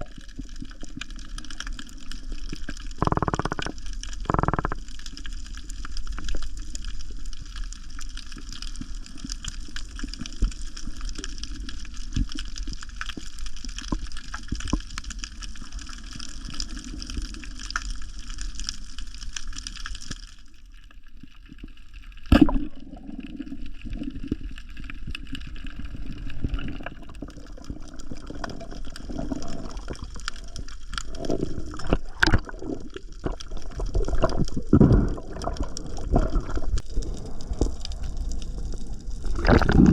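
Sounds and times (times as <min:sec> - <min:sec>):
water sloshing underwater: 0:00.0 - 0:39.9
small clicks and knocks: 0:03.0 - 0:04.9.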